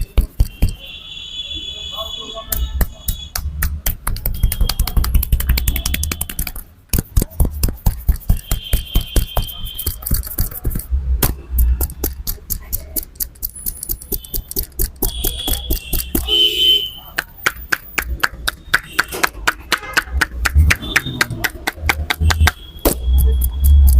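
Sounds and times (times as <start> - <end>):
hand slaps and taps on head: 2.5 - 13.3, 17.2 - 23.0.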